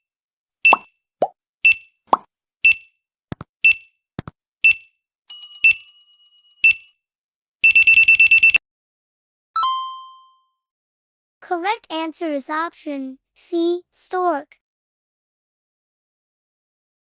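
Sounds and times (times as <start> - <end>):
bell-like ding: 9.6 - 10.5.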